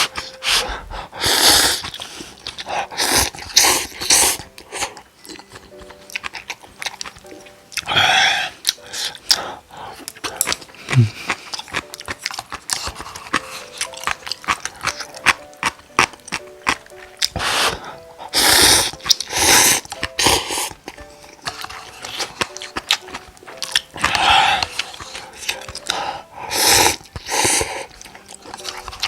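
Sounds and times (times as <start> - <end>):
loud noodle slurps: 1.2 - 2.0, 17.3 - 20.8, 26.4 - 27.9
wet chewing clicks: 1.3 - 29.0.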